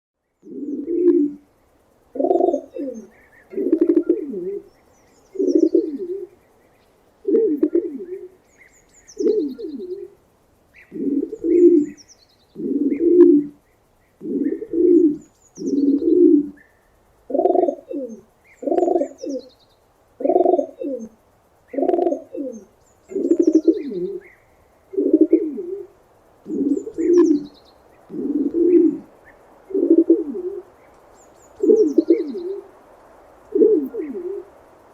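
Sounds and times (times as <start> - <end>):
pigeon cooing: 0.4 - 1.4, 2.2 - 4.7, 5.4 - 6.4, 7.2 - 8.4, 9.2 - 10.2, 10.9 - 12.0, 12.6 - 13.6, 14.2 - 16.6, 17.3 - 19.5, 20.2 - 24.3, 24.9 - 30.7, 31.6 - 32.7, 33.5 - 34.6.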